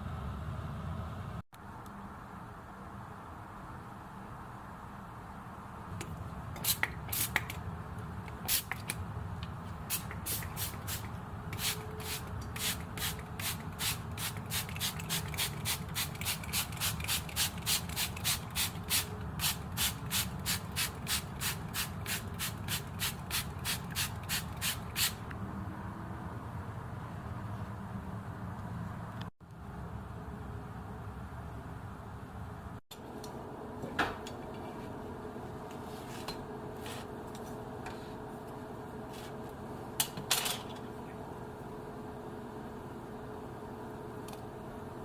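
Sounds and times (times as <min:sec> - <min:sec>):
spray bottle hissing: 0:06.6 - 0:07.5, 0:09.9 - 0:25.2
steady low hum: 0:25.2 - 0:45.0.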